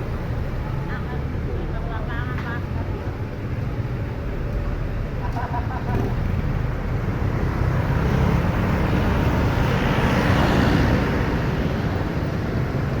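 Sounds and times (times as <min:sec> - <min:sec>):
vehicle passing by: 0:05.9 - 0:13.0.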